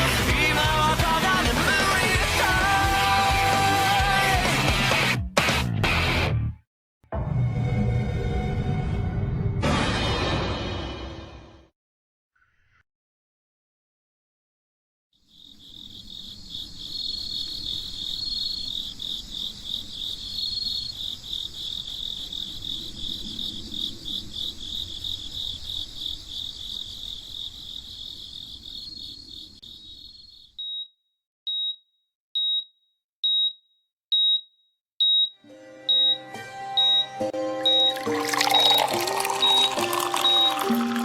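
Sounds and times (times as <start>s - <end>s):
crickets chirping: 15.2s - 30.8s, 37.7s - 41.0s.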